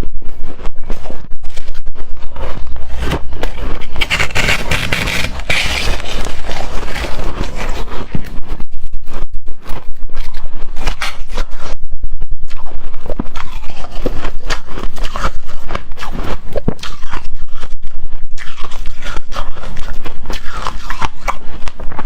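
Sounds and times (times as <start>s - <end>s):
crunching shaved ice: 3.8s - 7.9s, 18.4s - 22.0s.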